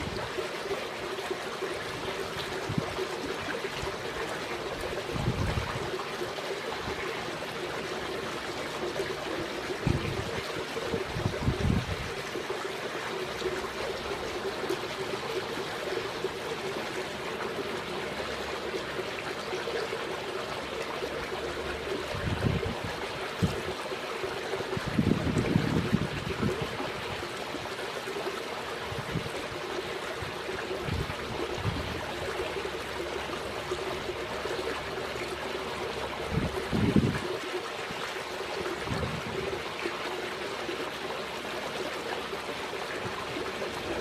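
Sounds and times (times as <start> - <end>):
wind buffeting microphone: 0.0 - 0.4, 2.4 - 3.1, 4.7 - 6.0, 9.7 - 12.3, 22.0 - 23.9, 24.5 - 27.7, 28.9 - 32.4, 36.2 - 37.4, 38.7 - 39.7
trickling water: 0.0 - 44.0.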